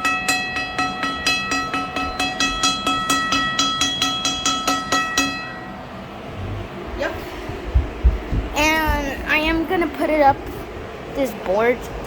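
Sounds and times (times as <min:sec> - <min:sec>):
fire alarm bell ringing: 0:00.0 - 0:05.9.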